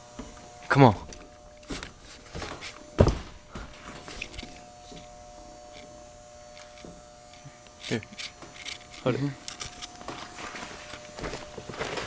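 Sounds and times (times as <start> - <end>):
faint steady hum: 0.0 - 12.0
heavy thump: 2.4 - 3.7.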